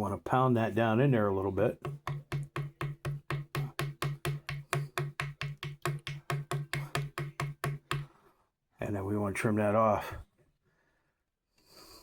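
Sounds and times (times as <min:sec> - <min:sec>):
rapid wooden taps: 0:01.8 - 0:08.1.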